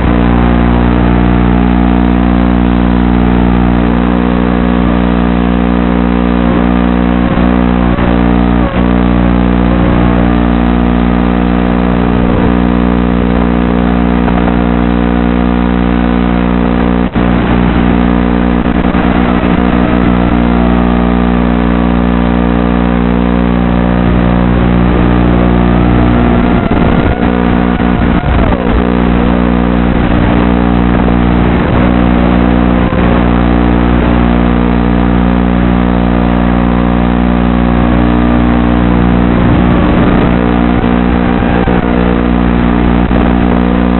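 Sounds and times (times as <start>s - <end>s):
steady low droning tones: 0.0s - 43.9s
quadcopter motors whining: 17.2s - 34.4s, 39.3s - 43.9s.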